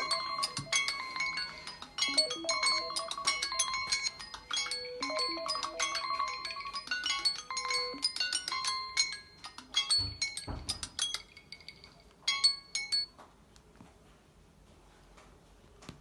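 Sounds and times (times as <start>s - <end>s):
phone alarm chiming melody: 0.0s - 8.0s.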